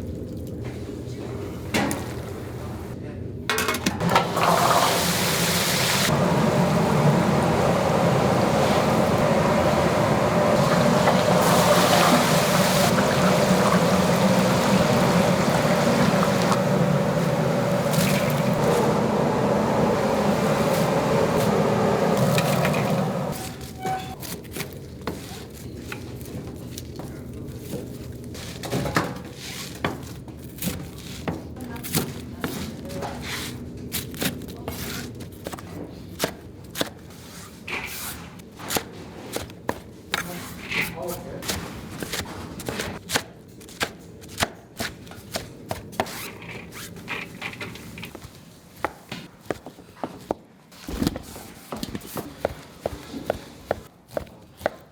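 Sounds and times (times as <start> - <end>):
machinery hum: 4.0 - 24.2.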